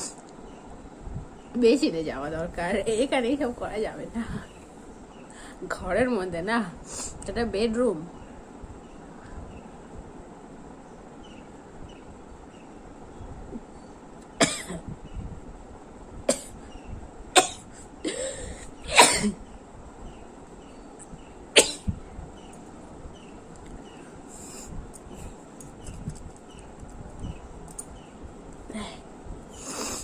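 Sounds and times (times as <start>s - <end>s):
voiced intake of breath: 18.1s - 18.7s, 24.3s - 25.4s, 28.7s - 30.0s
woman sneezing: 18.9s - 19.4s.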